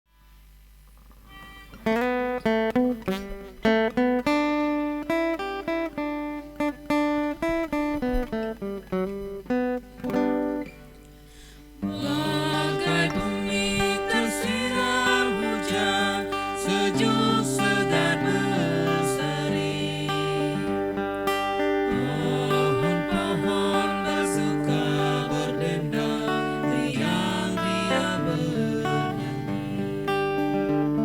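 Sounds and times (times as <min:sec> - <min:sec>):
acoustic guitar picking melody: 0:00.8 - 0:31.0
hymn singing: 0:11.8 - 0:31.0.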